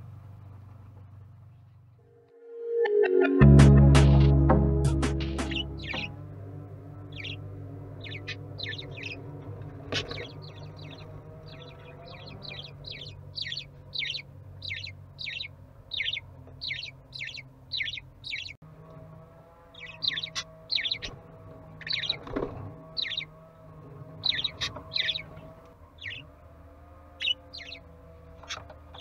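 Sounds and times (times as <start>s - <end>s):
budgerigars chirping: 5.2s - 6.2s, 7.0s - 18.6s, 19.8s - 23.3s, 24.2s - 26.3s, 27.2s - 29.0s.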